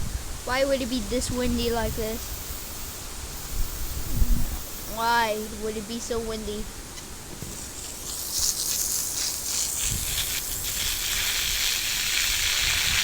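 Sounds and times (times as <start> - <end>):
strong wind gusting: 0.0 - 6.7
wind buffeting microphone: 0.0 - 6.7, 9.7 - 13.0.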